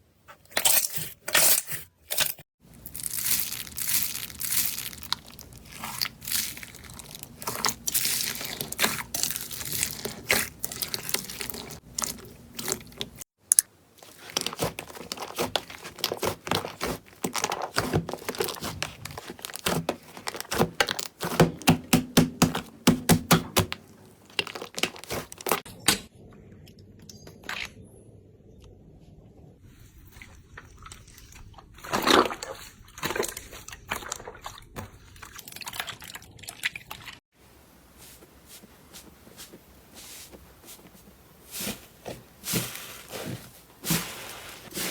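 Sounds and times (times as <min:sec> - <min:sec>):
slime squelch: 0:02.7 - 0:25.7, 0:29.7 - 0:37.2, 0:38.0 - 0:44.9
slime crackling and popping: 0:02.8 - 0:13.2, 0:14.1 - 0:25.6.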